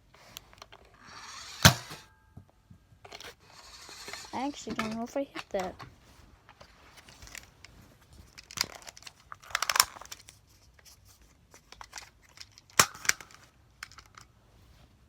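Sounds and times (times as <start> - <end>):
clattering and scraping: 0.4 - 10.2.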